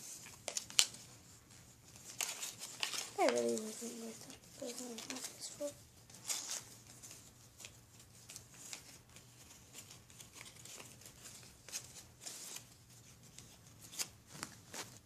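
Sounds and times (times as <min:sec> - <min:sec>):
plastic toys and packaging rustling: 0:00.0 - 0:15.0.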